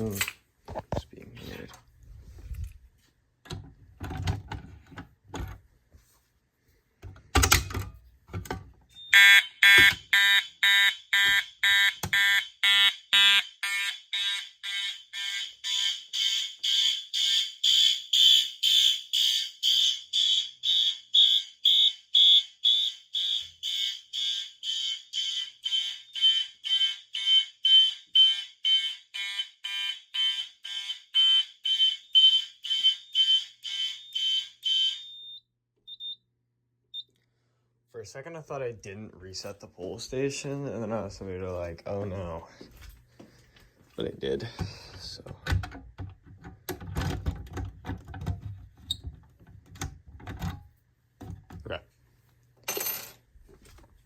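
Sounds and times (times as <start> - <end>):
fire alarm horn pulses: 9.0 - 36.2.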